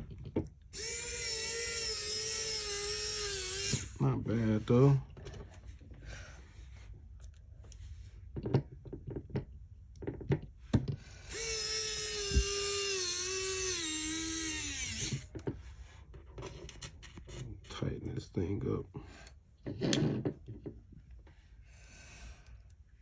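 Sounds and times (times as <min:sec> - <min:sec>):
hair clipper humming: 0:00.7 - 0:04.0, 0:11.3 - 0:15.3.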